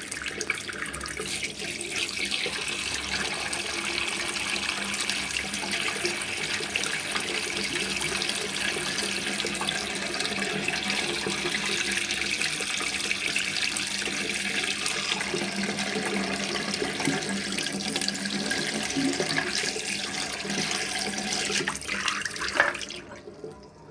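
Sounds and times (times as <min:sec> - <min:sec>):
tap water splashing into basin: 0:16.7 - 0:23.2.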